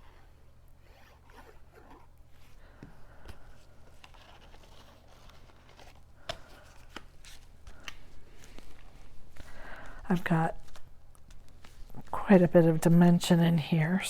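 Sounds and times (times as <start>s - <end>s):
paper rustling: 0.8s - 12.9s.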